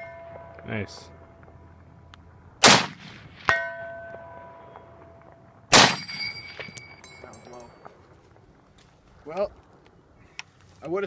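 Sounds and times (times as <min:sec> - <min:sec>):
distant steel target ringing: 0:00.0 - 0:01.7, 0:02.6 - 0:07.9
rifle shots: 0:02.6 - 0:03.6, 0:05.7 - 0:06.8.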